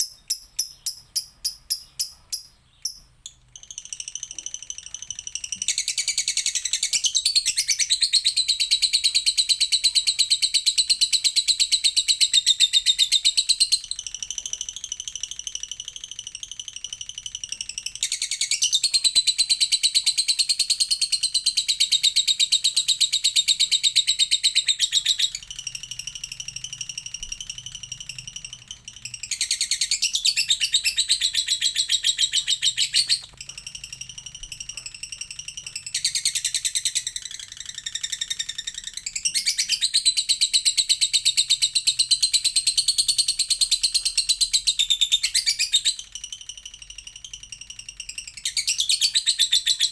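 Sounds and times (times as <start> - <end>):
lovebird chattering trills: 0.0 - 49.9.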